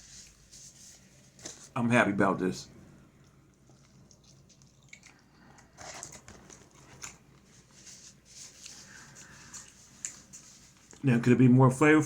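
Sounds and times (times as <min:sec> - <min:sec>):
person chewing: 0:03.1 - 0:11.0.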